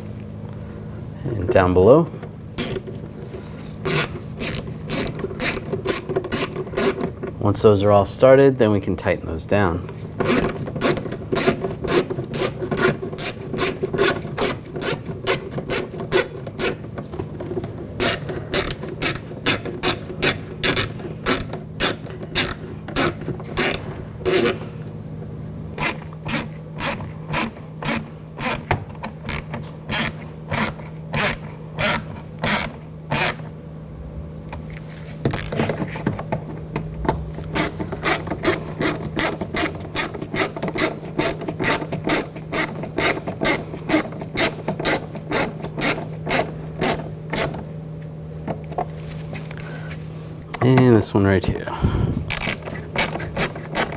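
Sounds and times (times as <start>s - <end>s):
hand ratchet clicking: 3.8s - 7.1s, 10.2s - 16.8s, 29.3s - 33.4s, 37.6s - 47.5s, 52.3s - 53.9s.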